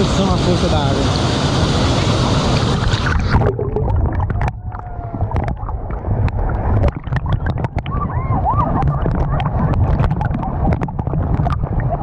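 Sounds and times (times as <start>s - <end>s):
waterfall roaring on microphone: 0.0s - 12.0s
muffled underwater rumble with clicks: 2.6s - 12.0s.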